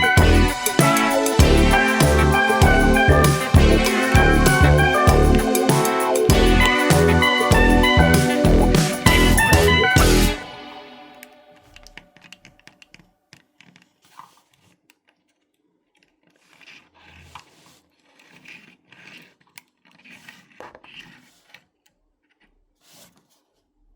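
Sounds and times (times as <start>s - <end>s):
background music: 0.0s - 12.0s
scratching and scraping on wood: 16.0s - 23.6s.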